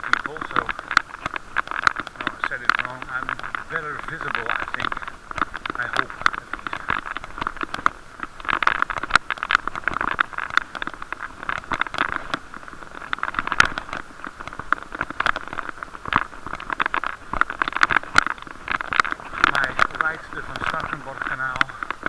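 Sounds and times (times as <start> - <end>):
muffled wind rush: 0.0 - 22.0
small knocks and rattles: 0.0 - 22.0.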